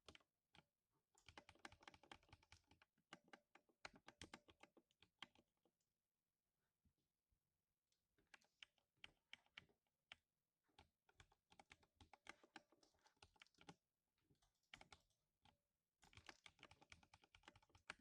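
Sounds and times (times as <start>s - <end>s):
mechanical keyboard typing: 1.2s - 5.4s, 10.8s - 13.8s, 16.0s - 18.0s.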